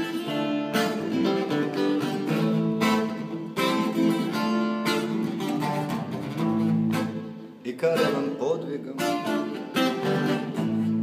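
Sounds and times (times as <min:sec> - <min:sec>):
acoustic guitar strumming: 0:00.0 - 0:11.0
person singing: 0:07.6 - 0:10.5.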